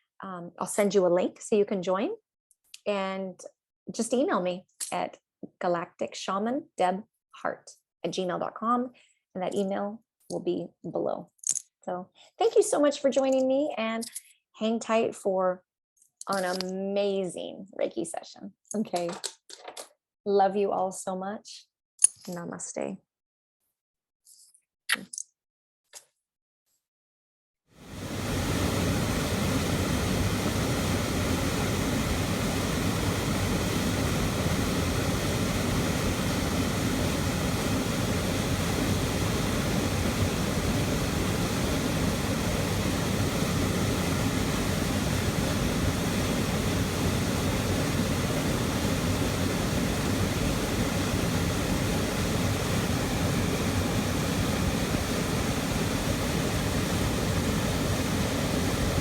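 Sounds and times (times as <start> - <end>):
waterfall rushing: 27.8 - 59.0.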